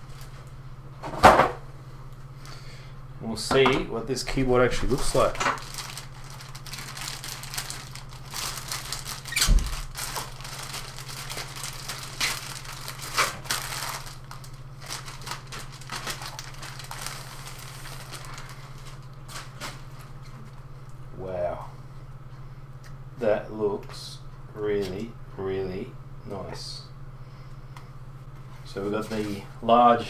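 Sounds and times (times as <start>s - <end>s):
plastic packaging crinkling: 4.8s - 20.7s.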